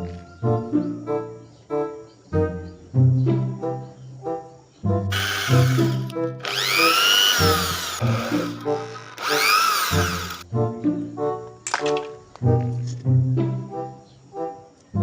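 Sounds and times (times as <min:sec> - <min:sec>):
background music: 0:00.0 - 0:15.0
electric drill whirring: 0:05.1 - 0:10.4.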